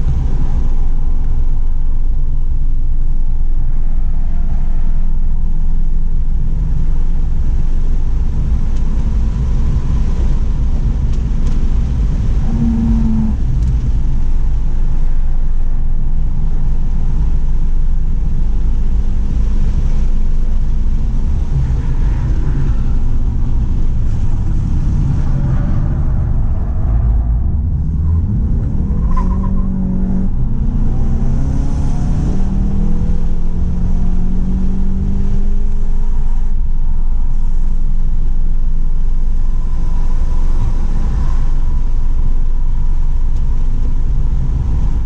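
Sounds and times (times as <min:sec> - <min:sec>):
car engine under load: 0:00.0 - 0:45.0
road and wind noise: 0:00.0 - 0:45.0
brief steady tone: 0:12.4 - 0:13.4.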